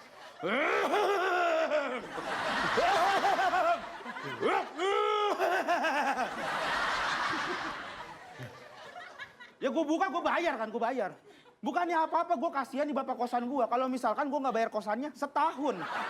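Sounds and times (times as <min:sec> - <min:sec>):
audience laughing: 0:00.0 - 0:09.7, 0:15.7 - 0:16.0.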